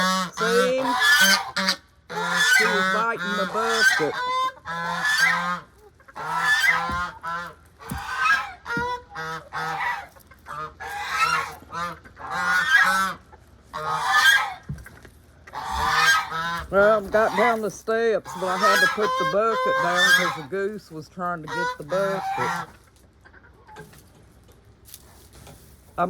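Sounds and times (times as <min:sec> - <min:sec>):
geese honking: 0:00.0 - 0:23.9.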